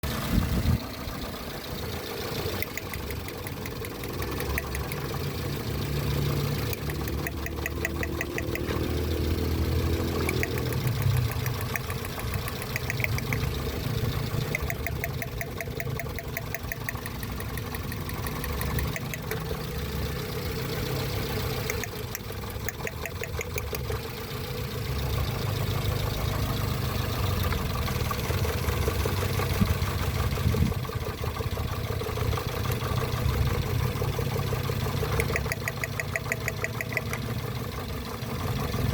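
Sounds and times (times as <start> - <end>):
vehicle engine idling: 0.0 - 38.9
fast light ticking: 2.5 - 5.2, 6.6 - 19.6, 21.6 - 23.9, 35.0 - 37.4.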